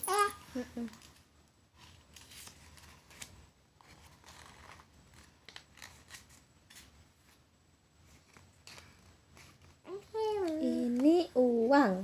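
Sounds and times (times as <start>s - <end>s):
faint rustles and clicks: 0.0s - 12.0s.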